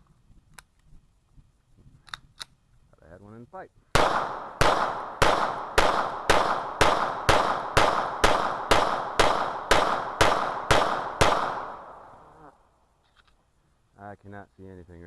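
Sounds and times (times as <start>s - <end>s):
pistol shots with echo: 4.0s - 12.3s.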